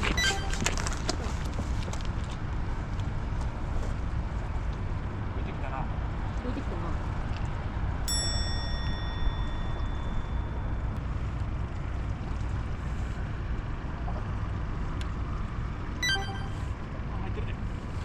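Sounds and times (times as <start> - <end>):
low rumble of wind and water: 0.0 - 18.0
metallic bell ding: 0.2 - 0.7, 8.1 - 10.8, 16.0 - 16.6
short bell rings: 0.2 - 0.7, 8.1 - 10.8, 16.0 - 16.6.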